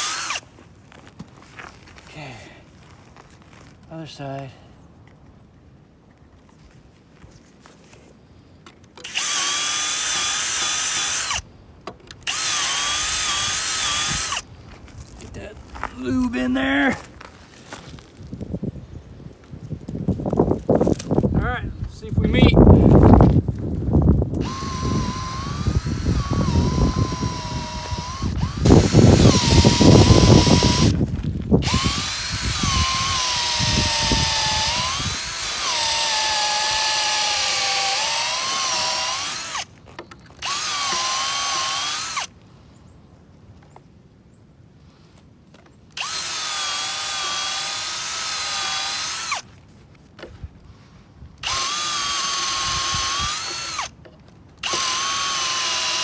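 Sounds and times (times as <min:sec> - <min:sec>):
power drill motor whine: 0:00.0 - 0:00.4, 0:09.0 - 0:11.4, 0:12.2 - 0:14.5, 0:24.4 - 0:39.7, 0:40.4 - 0:42.3, 0:46.0 - 0:49.4, 0:51.4 - 0:53.9, 0:54.6 - 0:56.0
drill bit crunching through wood: 0:00.0 - 0:02.0, 0:08.8 - 0:11.5, 0:12.1 - 0:15.9, 0:24.3 - 0:42.3, 0:45.9 - 0:49.6, 0:51.4 - 0:54.0, 0:54.6 - 0:56.0.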